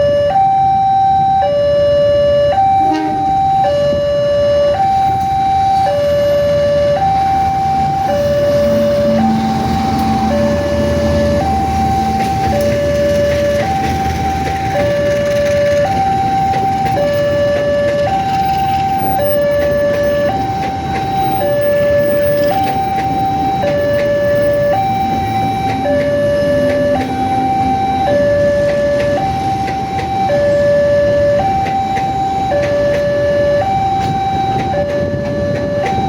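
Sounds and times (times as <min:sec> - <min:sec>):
level-crossing two-tone alarm: 0:00.0 - 0:36.0
steady rushing background noise: 0:07.2 - 0:36.0.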